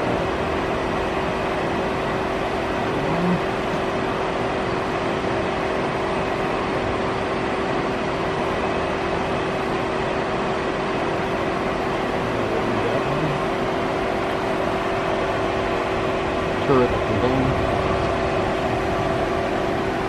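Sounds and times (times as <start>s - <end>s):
lathe machine humming: 0.0s - 20.0s.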